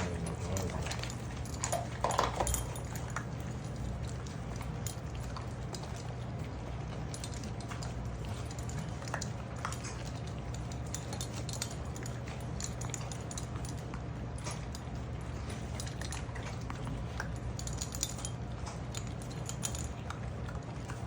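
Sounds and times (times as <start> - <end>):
food and dish clinks: 0.0 - 3.7
puppies eating: 0.0 - 21.0.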